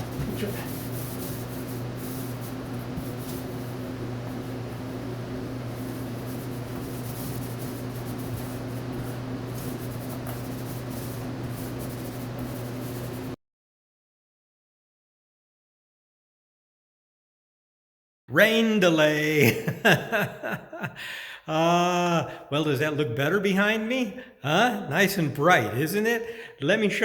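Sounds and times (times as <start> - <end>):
electric motor hum: 0.0 - 13.4
paint roller rustling on wall: 0.0 - 13.4.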